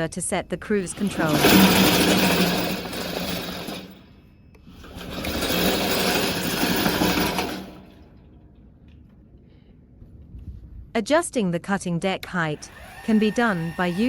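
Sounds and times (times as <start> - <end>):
electric motors whining: 0.6 - 7.9, 12.5 - 14.0.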